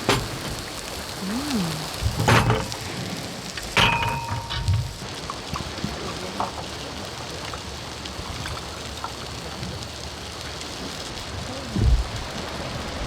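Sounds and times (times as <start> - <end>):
meat sizzling in a hot pan: 0.0 - 13.0.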